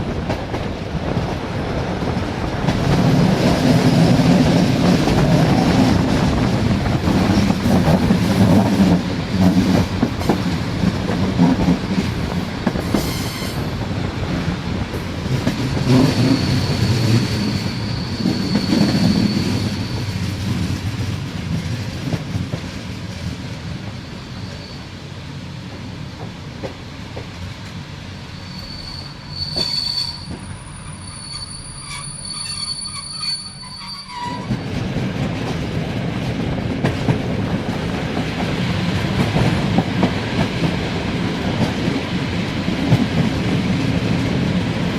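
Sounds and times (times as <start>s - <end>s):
train wheels rumbling on rails: 0.0s - 44.9s
high wheel squeal: 16.0s - 20.3s, 24.0s - 25.0s, 28.3s - 34.6s.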